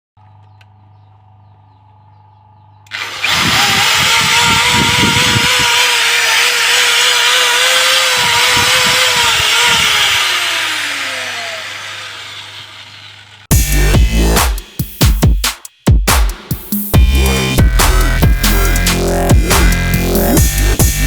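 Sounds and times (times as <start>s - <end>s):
electric motor whining: 2.9s - 14.4s, 17.0s - 21.0s.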